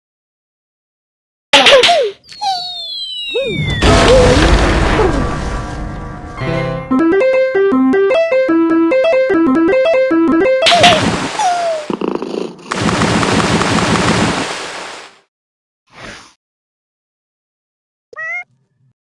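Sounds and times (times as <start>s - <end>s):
cartoon falling whistles: 2.4s - 4.4s
loud crash: 3.6s - 6.5s
tune of short plucked notes: 6.3s - 10.8s.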